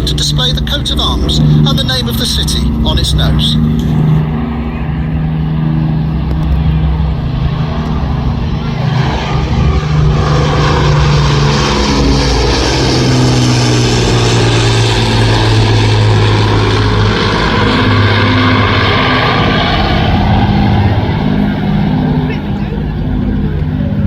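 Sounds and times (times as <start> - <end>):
aircraft piston engines droning: 0.0 - 24.0.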